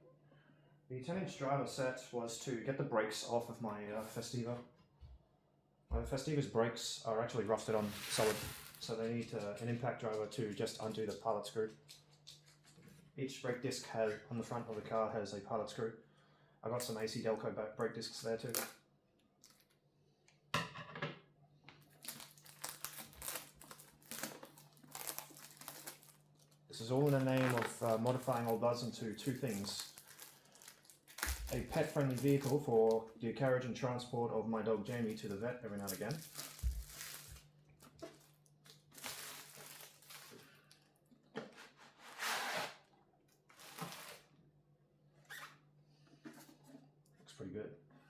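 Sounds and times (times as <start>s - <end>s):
packaging crinkling and rustling: 7.6s - 9.0s, 19.4s - 19.8s, 21.8s - 33.2s, 34.9s - 40.9s, 43.5s - 44.3s.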